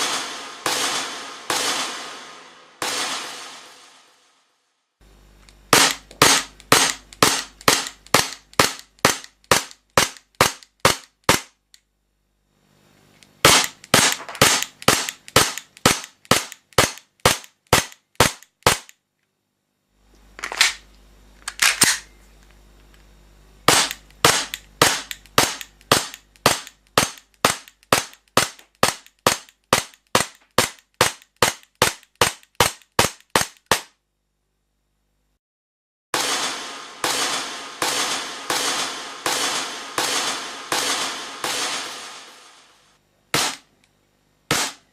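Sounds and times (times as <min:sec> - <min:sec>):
airsoft pistol shots: 0:00.0 - 0:04.0, 0:05.7 - 0:11.5, 0:13.4 - 0:18.9, 0:23.7 - 0:33.9, 0:36.2 - 0:43.7, 0:44.5 - 0:44.8.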